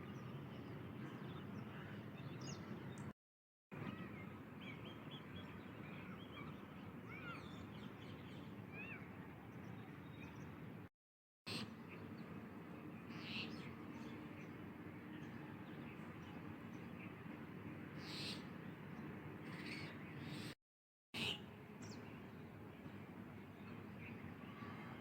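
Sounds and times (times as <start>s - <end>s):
birds calling: 11.5s - 14.6s, 18.0s - 20.6s.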